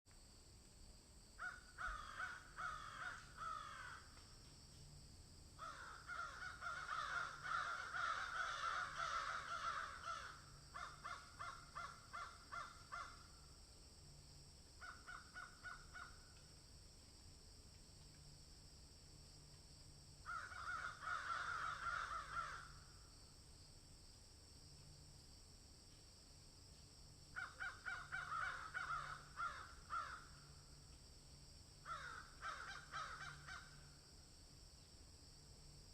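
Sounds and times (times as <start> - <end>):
birds harsh repeated calls: 1.4 - 4.0, 5.6 - 13.3, 20.3 - 22.8, 27.4 - 30.4, 31.9 - 33.8
steady high hiss: 12.4 - 35.9.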